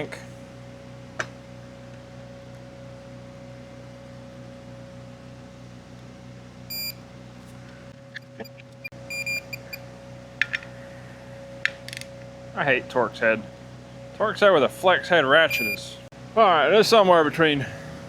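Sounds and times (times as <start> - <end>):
torque wrench beeps: 6.7 - 7.0, 8.4 - 9.8, 15.5 - 15.9
ratchet clicks: 11.7 - 12.1.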